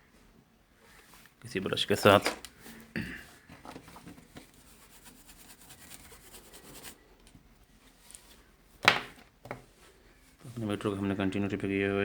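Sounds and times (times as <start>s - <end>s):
brush scratching circuit board: 4.4s - 7.0s.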